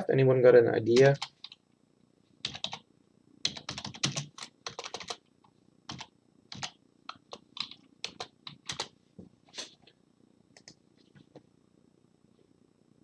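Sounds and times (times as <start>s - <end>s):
typing on computer keyboard: 1.0s - 1.6s, 2.4s - 2.8s, 3.4s - 5.2s, 5.9s - 8.9s.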